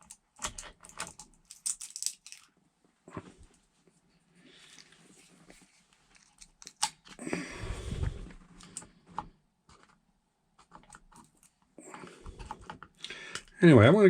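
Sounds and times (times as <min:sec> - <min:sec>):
light clicks and knocks of parts: 0:00.0 - 0:02.5, 0:04.7 - 0:07.2, 0:10.6 - 0:13.6.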